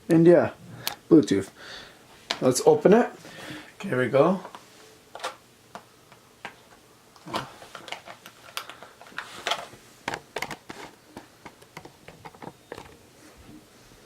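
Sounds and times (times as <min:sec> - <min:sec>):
packaging clicks taps and rustles: 0:05.2 - 0:13.0.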